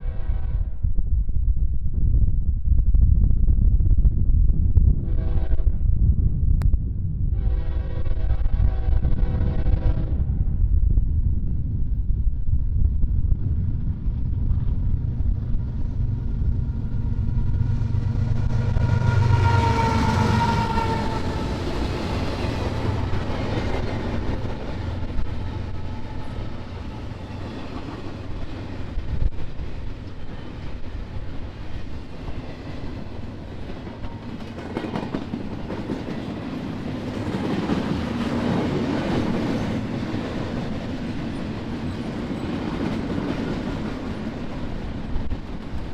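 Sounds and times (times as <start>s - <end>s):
train horn: 0.0s - 0.9s, 5.0s - 5.8s, 7.3s - 10.5s, 16.8s - 27.4s
locomotive engine rumble: 10.4s - 42.8s
train wheels clattering: 31.6s - 45.9s
train cars knocking: 32.2s - 45.9s.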